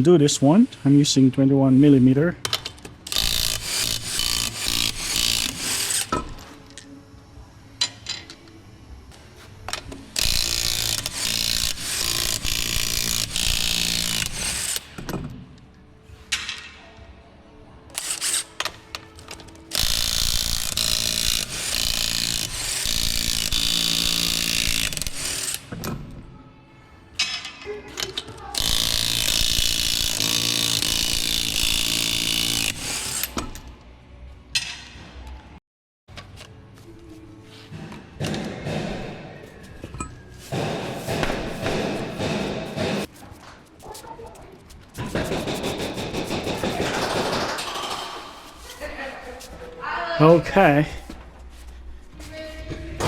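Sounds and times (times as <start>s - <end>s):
impact wrench hammering: 2.5s - 6.2s, 10.2s - 15.0s, 19.7s - 25.8s, 28.6s - 33.6s, 40.5s - 43.1s, 45.0s - 48.3s.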